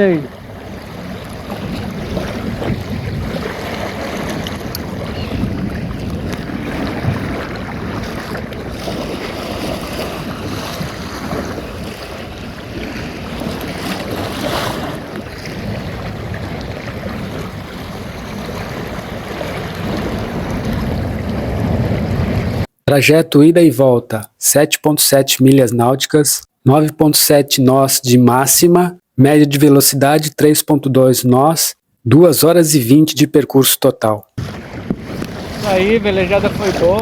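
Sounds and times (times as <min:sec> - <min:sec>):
water splashing along a hull: 0:00.0 - 0:22.7, 0:34.3 - 0:37.0
wind buffeting microphone: 0:00.0 - 0:22.7, 0:34.4 - 0:37.0.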